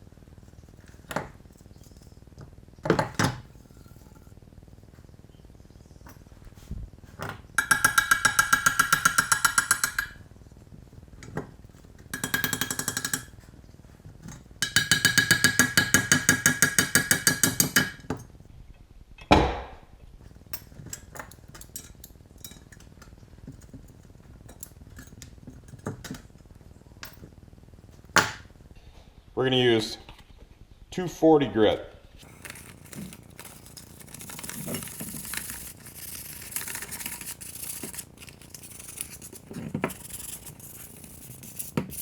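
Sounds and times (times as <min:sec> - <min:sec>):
sharp knock: 0:19.2 - 0:19.9.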